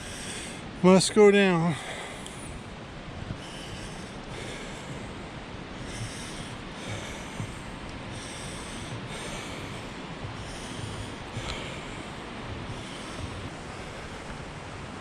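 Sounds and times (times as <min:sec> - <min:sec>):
person breathing hard: 0:00.0 - 0:00.8, 0:01.7 - 0:15.0
wind on microphone: 0:01.8 - 0:15.0.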